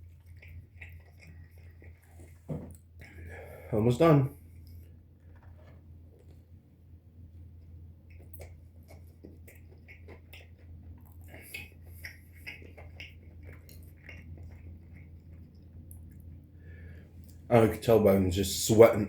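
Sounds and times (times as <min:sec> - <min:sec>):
wet mouth clicks and smacks: 0:00.0 - 0:03.3, 0:07.6 - 0:16.3
person chewing: 0:00.0 - 0:03.7, 0:07.2 - 0:17.5
steady low hum: 0:00.0 - 0:19.0.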